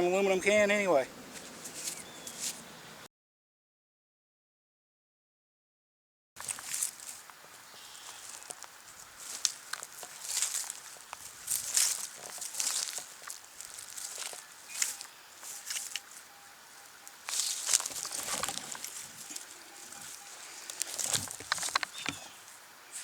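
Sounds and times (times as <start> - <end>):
dry leaf litter crackling: 6.4 - 23.0
faint steady tone: 7.4 - 23.0.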